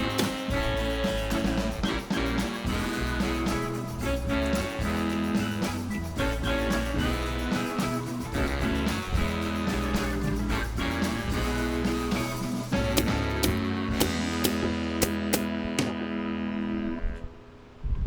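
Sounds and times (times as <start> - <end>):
guitar-led rock country music: 0.0 - 16.1.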